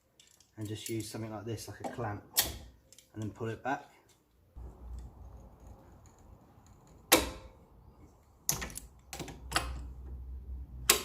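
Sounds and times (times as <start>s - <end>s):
clamp clicking and knocking: 6.0s - 7.6s.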